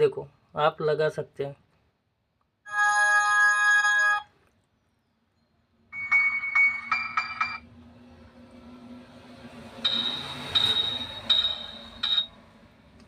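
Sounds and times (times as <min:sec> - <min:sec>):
ringing bell-like tones: 0:06.0 - 0:07.6, 0:09.8 - 0:12.4.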